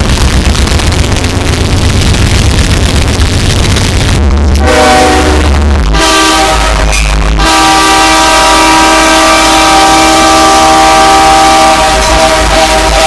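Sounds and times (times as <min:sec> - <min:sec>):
train air horn: 0:04.6 - 0:13.0.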